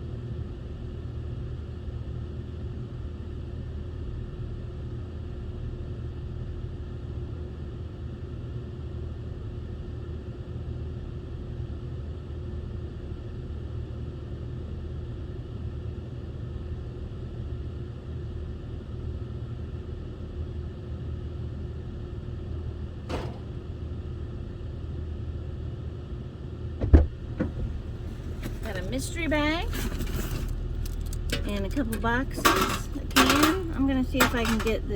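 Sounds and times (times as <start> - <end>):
sharp thump: 23.1 - 23.7
vehicle engine rumbling: 26.8 - 34.9.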